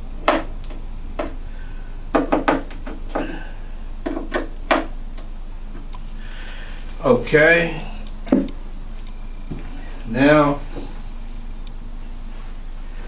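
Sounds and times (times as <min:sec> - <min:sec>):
steady low hum: 0:00.0 - 0:13.0
wood knocks and taps: 0:08.3 - 0:08.5.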